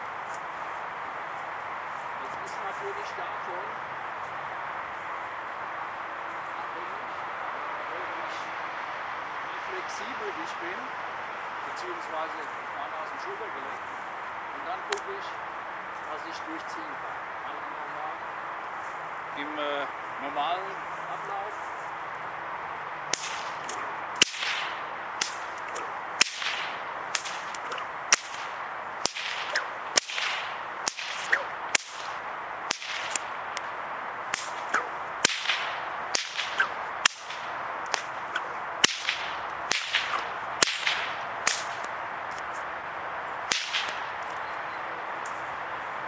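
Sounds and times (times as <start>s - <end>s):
whip cracking: 8.3s - 8.5s, 14.9s - 15.1s, 23.0s - 42.7s, 43.4s - 44.4s
whip thong swishing: 23.1s - 33.7s, 34.3s - 42.6s, 43.5s - 44.3s.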